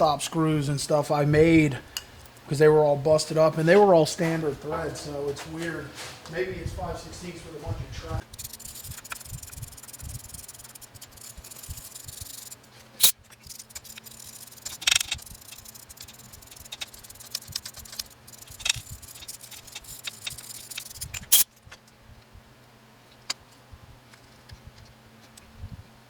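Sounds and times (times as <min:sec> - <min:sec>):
metal rubbing scrape: 0:08.2 - 0:21.5
small metal rattles: 0:08.2 - 0:21.9.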